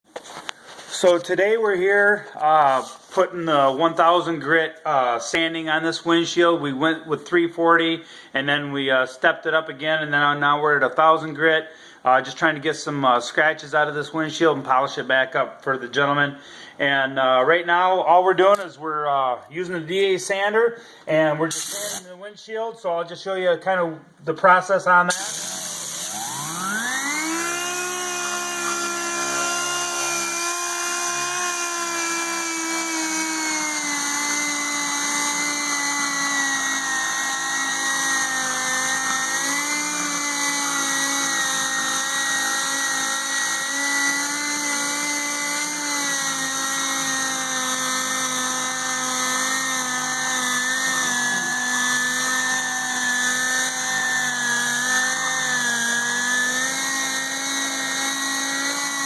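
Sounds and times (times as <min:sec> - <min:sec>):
sander whining on plastic: 0:25.1 - 0:59.0.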